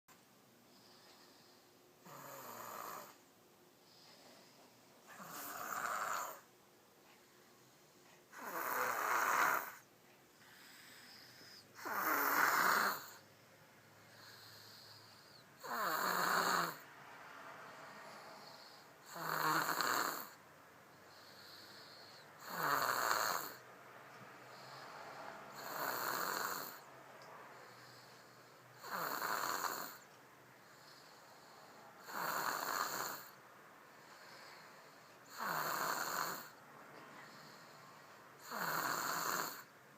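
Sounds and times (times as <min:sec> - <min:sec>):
quiet breathing: 0:00.1 - 0:38.6
baby snoring: 0:00.8 - 0:03.2, 0:04.0 - 0:06.5, 0:08.3 - 0:13.2, 0:14.1 - 0:16.9, 0:17.7 - 0:20.4, 0:21.1 - 0:23.6, 0:24.5 - 0:26.9, 0:27.6 - 0:33.4, 0:34.0 - 0:36.6, 0:37.2 - 0:39.7.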